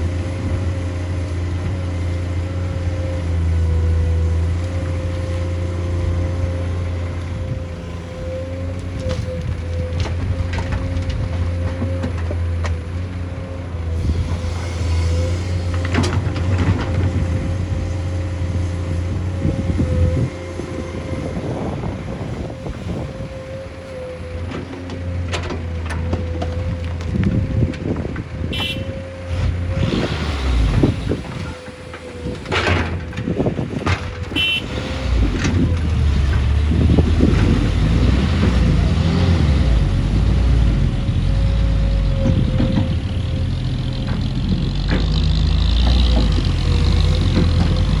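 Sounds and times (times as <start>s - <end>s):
diesel engine drone: 0.0s - 48.0s
knocks and clatter: 29.3s - 39.5s, 41.9s - 48.0s.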